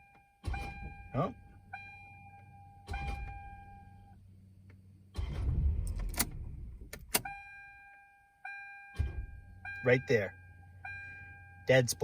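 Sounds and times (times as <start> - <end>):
car starter humming: 0.4 - 4.0, 5.1 - 7.6.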